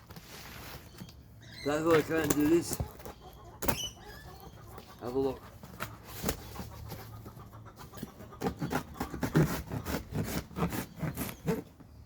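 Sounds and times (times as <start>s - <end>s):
scratching and rubbing cardboard: 8.4s - 11.8s.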